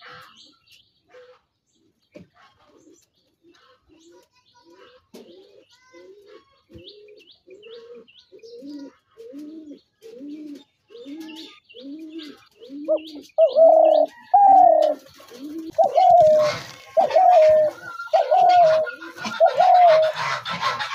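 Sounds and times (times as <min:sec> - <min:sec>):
doves cooing softly: 0:05.1 - 0:20.9
loud drawn-out coos: 0:15.8 - 0:20.9.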